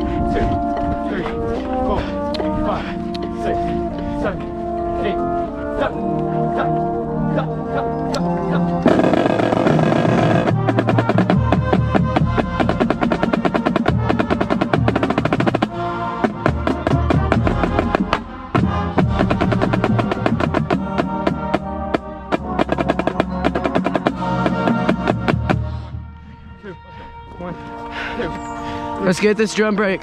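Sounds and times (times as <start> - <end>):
tuned bass drums: 8.8 - 15.7
snare drum rolls: 8.9 - 15.6.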